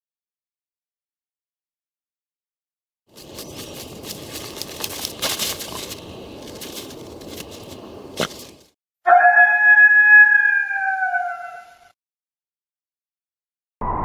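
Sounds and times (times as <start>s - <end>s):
crunching crackling noise: 3.1s - 8.8s.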